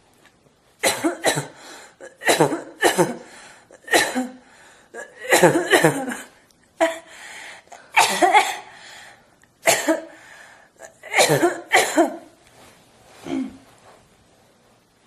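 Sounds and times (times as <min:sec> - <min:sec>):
person coughing harshly: 0:00.8 - 0:04.4, 0:05.0 - 0:07.1, 0:07.8 - 0:08.7, 0:09.6 - 0:10.2, 0:10.8 - 0:12.4, 0:13.2 - 0:13.6.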